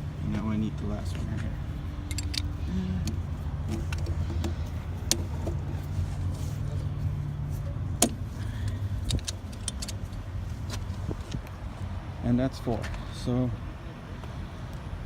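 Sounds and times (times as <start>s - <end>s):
truck engine idling: 0.0s - 14.2s
metal chain and key clicks: 2.0s - 2.6s.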